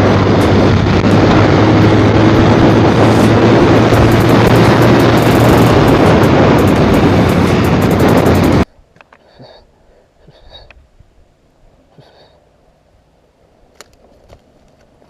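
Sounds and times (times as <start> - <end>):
motorcycle engine running: 0.0 - 8.6
loud rush of noise: 0.0 - 8.7.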